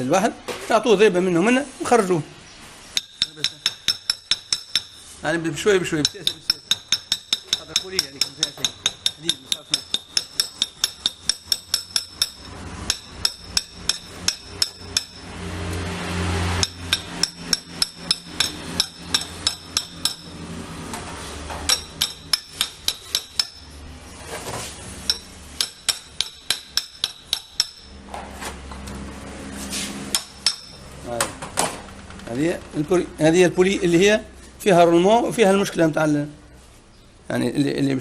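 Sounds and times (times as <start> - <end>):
hammer tapping on metal: 3.0 - 5.1, 5.9 - 15.9, 16.5 - 23.8, 25.0 - 28.0, 30.1 - 31.4.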